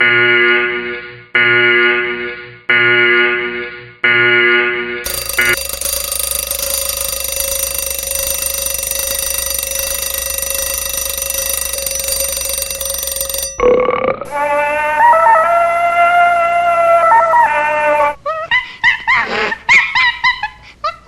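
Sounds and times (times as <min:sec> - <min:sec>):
electric bell ringing: 0:05.1 - 0:14.4.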